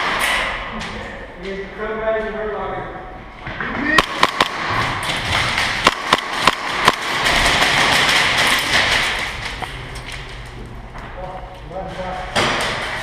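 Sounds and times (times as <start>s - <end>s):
airsoft gun shots: 0.0s - 0.6s, 4.0s - 5.1s, 5.8s - 8.8s.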